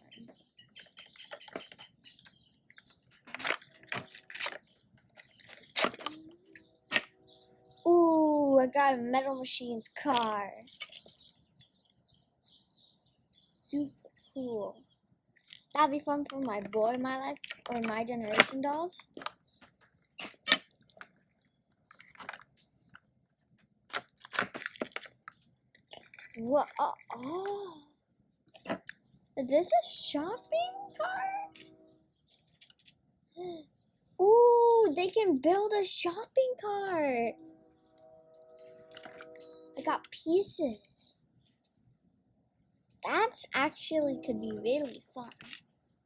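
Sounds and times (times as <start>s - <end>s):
plastic wrapping crinkling and tearing: 3.1s - 6.2s, 16.3s - 19.4s, 23.9s - 27.5s, 44.9s - 45.6s.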